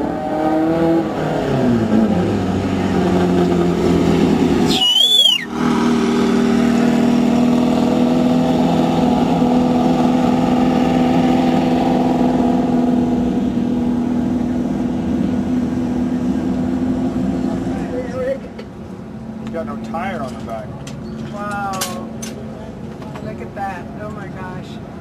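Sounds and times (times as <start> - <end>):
short warbling squeal: 4.7 - 5.6.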